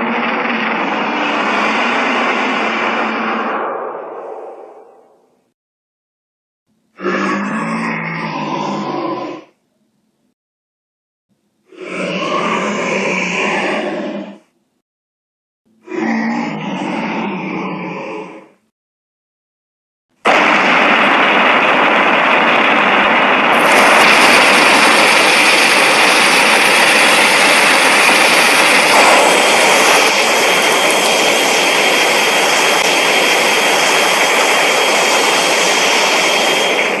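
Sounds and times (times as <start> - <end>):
monster rushing blast: 0.0 - 5.2, 20.3 - 37.0
thin high whine: 0.0 - 5.5, 20.3 - 37.0
bright hiss: 23.6 - 37.0.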